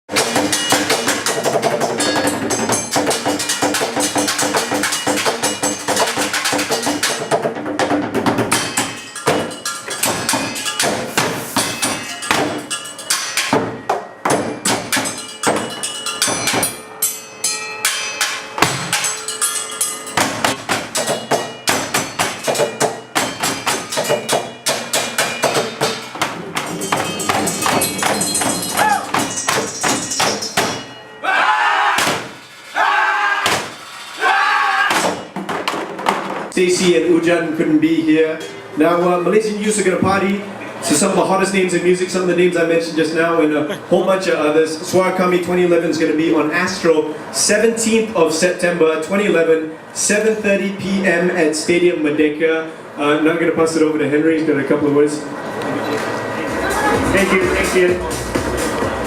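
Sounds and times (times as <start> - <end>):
fast percussive music: 0.1 - 16.9, 17.9 - 31.0, 56.6 - 59.0.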